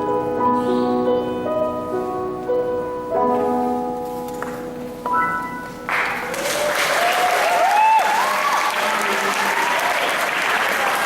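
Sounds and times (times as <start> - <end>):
piano chord ringing: 0.0 - 6.3
audience applause and cheering: 5.9 - 11.0
whooping shouts: 6.6 - 10.2.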